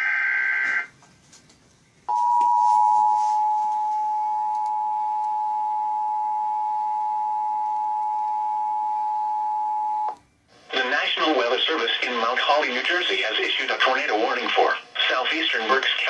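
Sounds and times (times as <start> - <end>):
two-tone attention signal: 2.1 - 10.1.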